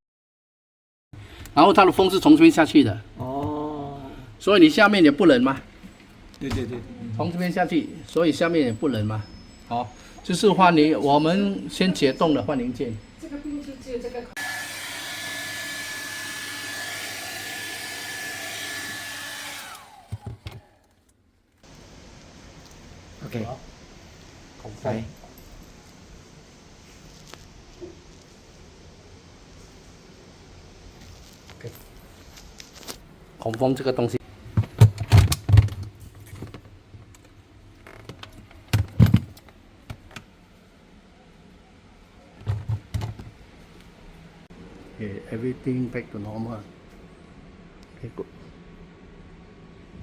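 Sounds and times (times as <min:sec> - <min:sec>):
hot-air blower whining: 0:14.4 - 0:20.7.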